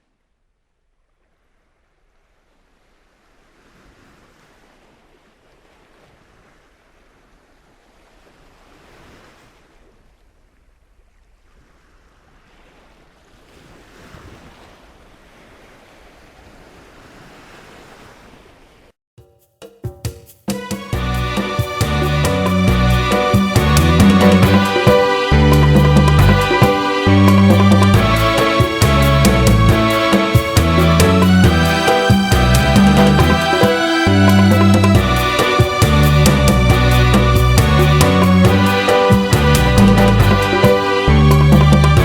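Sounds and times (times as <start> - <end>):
wind: 0.0 - 19.0
ocean waves rolling in: 11.5 - 18.9, 20.5 - 42.0.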